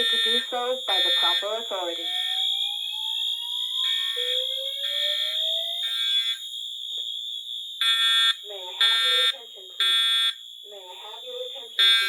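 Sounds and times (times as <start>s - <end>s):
continuous high-pitched tone: 0.0s - 7.0s
rising whoop alarm tones: 1.1s - 6.4s.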